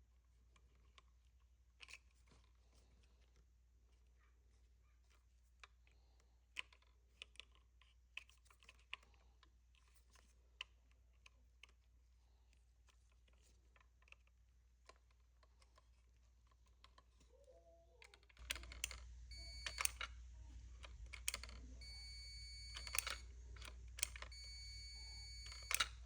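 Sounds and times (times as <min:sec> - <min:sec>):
small switch and probe clicks: 0:18.4 - 0:20.1, 0:20.8 - 0:26.0
multimeter continuity beeping: 0:18.5 - 0:20.2, 0:21.2 - 0:26.0.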